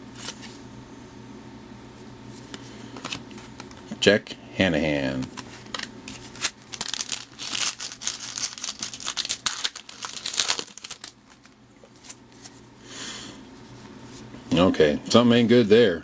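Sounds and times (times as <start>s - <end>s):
foil wrapper tearing and crinkling: 5.7s - 12.2s.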